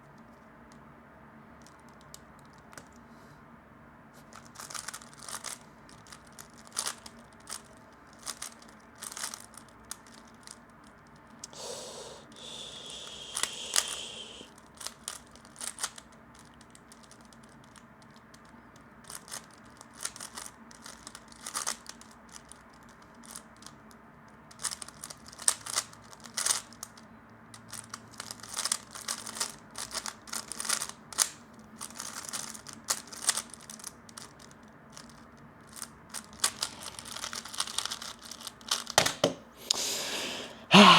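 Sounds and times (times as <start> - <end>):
puzzle cube layers clicking: 12.4 - 14.4.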